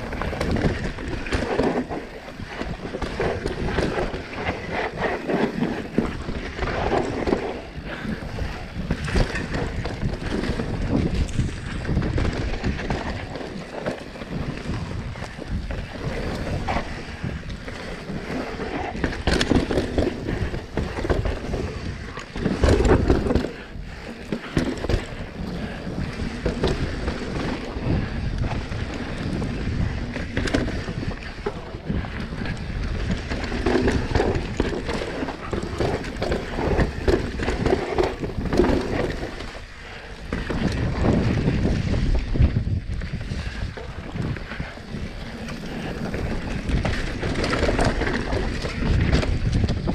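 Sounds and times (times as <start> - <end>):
bike knocking and rattling: 0.0 - 49.9
tyres rolling on dirt: 0.0 - 49.9
wind buffeting microphone: 0.0 - 49.9.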